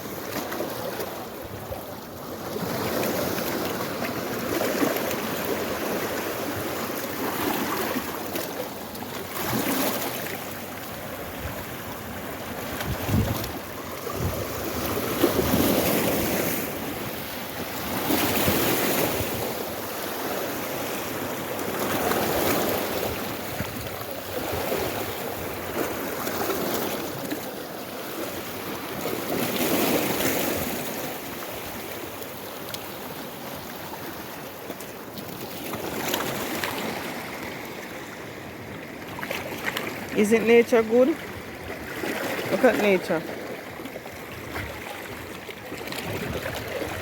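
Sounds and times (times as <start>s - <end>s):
sea waves on beach: 0.0s - 47.0s
wind buffeting microphone: 11.2s - 15.8s, 44.3s - 47.0s.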